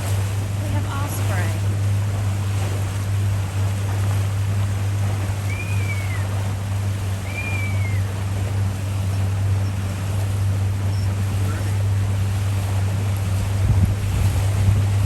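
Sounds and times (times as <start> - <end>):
boat motor running: 0.0 - 15.0
water and wind rushing: 0.0 - 15.0
osprey calls: 5.2 - 12.1.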